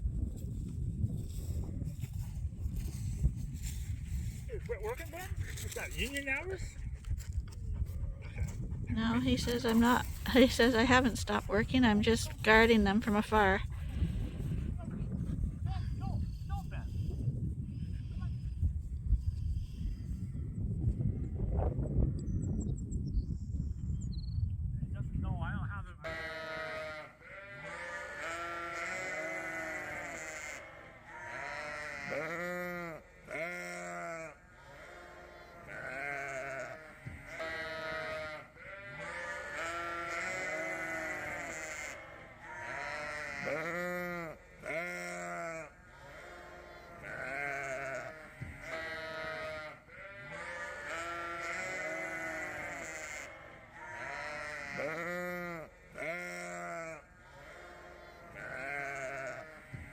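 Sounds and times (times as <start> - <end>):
sheep bleating: 26.0 - 59.9.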